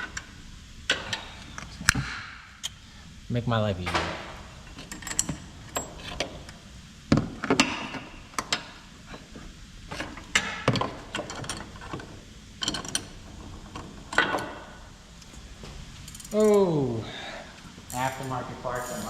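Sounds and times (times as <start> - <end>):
ratchet wrench clicking: 16.0 - 16.6, 17.9 - 19.0
metal tools clinking: 16.0 - 16.7, 17.9 - 19.0.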